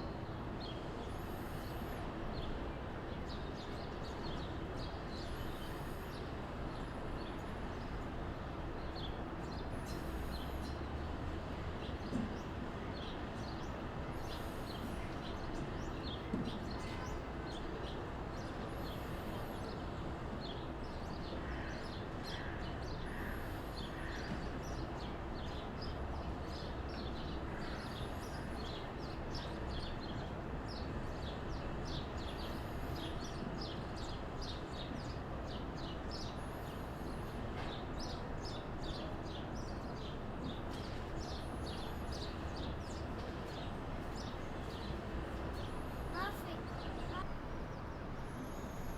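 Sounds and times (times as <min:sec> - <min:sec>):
outdoor background noise: 0:00.0 - 0:48.9
small birds chirping: 0:40.7 - 0:47.2.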